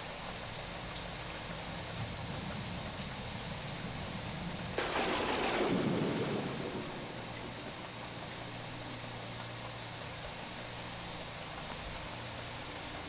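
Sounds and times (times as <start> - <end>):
steady hiss and low hum: 0.0 - 13.0
thunderclap rumbling: 1.8 - 9.2.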